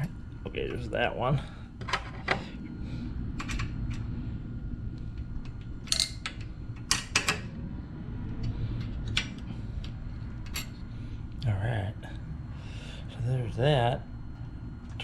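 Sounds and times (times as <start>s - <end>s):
steady low hum: 0.0s - 15.0s
metallic clicks of tools and parts: 5.4s - 7.4s.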